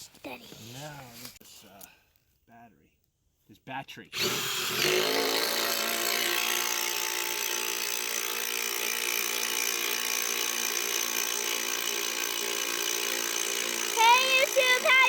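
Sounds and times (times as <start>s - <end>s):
cordless drill whining: 4.2s - 15.0s.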